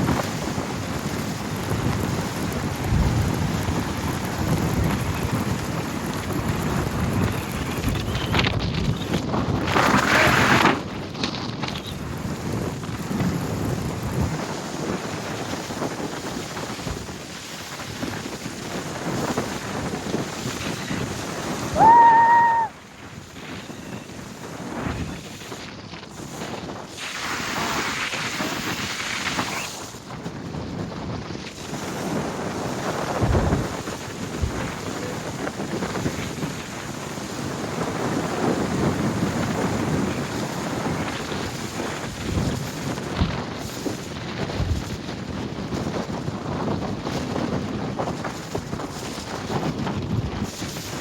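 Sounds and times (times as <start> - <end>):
wind buffeting microphone: 0.0 - 51.0
rushing water: 21.6 - 22.7
loud high tone: 21.8 - 22.7.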